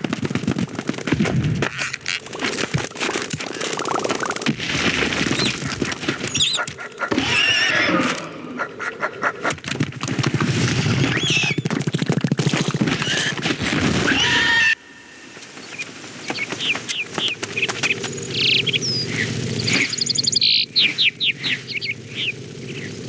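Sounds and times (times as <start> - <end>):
fluttering scuffling clatter: 0.0 - 7.4, 9.4 - 14.6, 15.3 - 23.0
large bird screeching: 5.2 - 9.0, 10.9 - 11.7, 12.9 - 17.4, 18.4 - 23.0.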